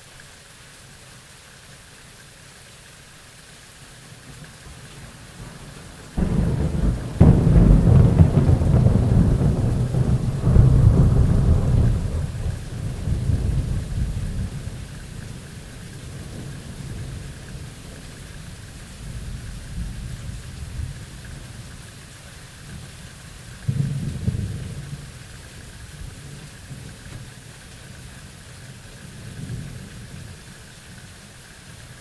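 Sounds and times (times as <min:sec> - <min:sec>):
steady rain: 0:00.0 - 0:32.0
rolling thunder rumbling: 0:05.6 - 0:18.1, 0:23.7 - 0:25.2
thunder cracking: 0:06.2 - 0:13.9.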